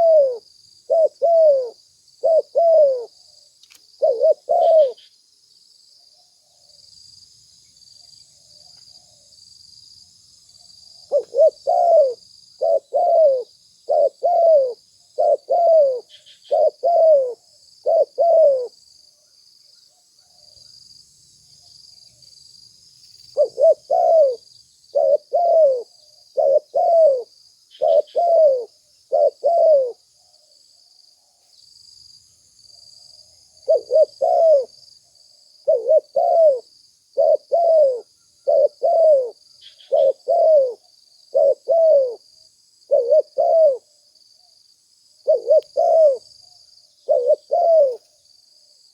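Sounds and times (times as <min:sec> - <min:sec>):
dove cooing: 0:00.0 - 0:03.2, 0:04.0 - 0:05.1, 0:11.0 - 0:18.8, 0:23.3 - 0:30.1, 0:33.6 - 0:34.8, 0:35.6 - 0:42.2, 0:42.9 - 0:44.0, 0:45.2 - 0:46.3, 0:47.0 - 0:48.1.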